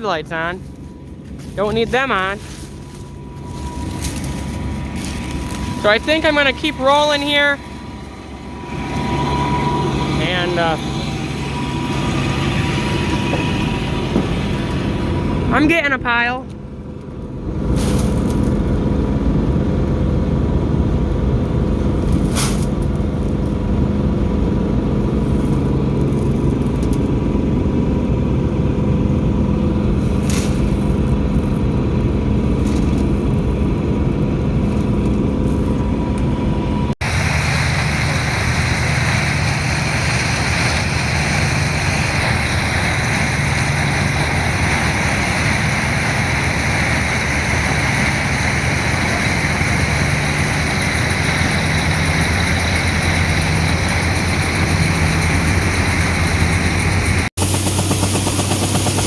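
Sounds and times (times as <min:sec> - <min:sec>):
hissy machine drone: 0:00.0 - 0:16.0, 0:35.8 - 0:59.0
combine harvester drone: 0:00.0 - 0:59.0.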